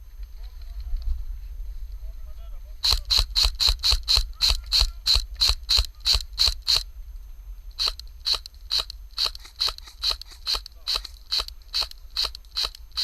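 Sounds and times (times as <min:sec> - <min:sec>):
airsoft gun firing shots: 0:02.8 - 0:06.8, 0:07.8 - 0:13.0.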